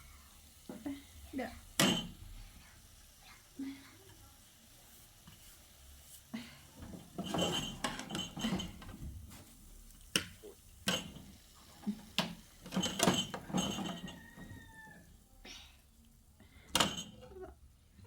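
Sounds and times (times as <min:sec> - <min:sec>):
hard objects clinking and clattering: 0:06.9 - 0:09.1, 0:12.2 - 0:14.6.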